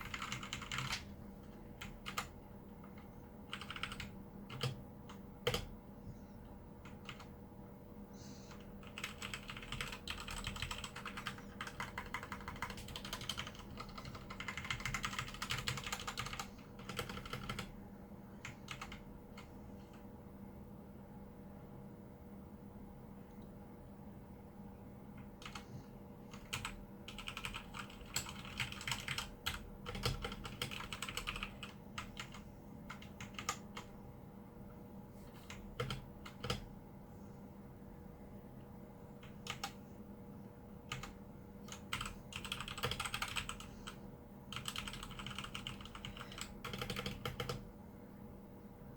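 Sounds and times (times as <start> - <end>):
mechanical keyboard typing: 0.0 - 5.7, 6.8 - 7.3, 8.5 - 17.7, 18.4 - 19.5, 25.3 - 25.6, 26.3 - 33.9, 35.5 - 36.7, 39.2 - 39.8, 40.9 - 47.6.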